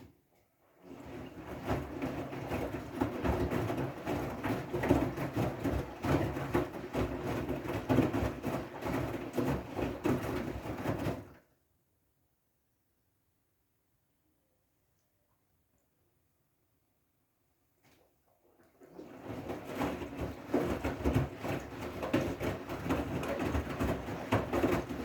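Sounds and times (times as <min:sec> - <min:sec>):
water swishing: 0:18.5 - 0:25.0
washing machine drum turning: 0:19.1 - 0:25.0.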